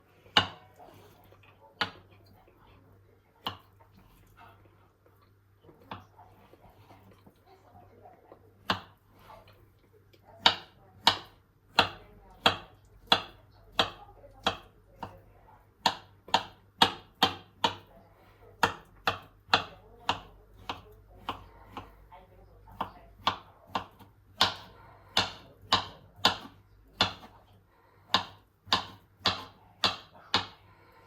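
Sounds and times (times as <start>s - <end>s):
knife chopping on cutting board: 0.4s - 0.7s, 3.4s - 4.2s, 8.6s - 9.0s, 10.4s - 15.2s, 15.8s - 17.9s, 18.6s - 22.0s, 22.7s - 30.6s.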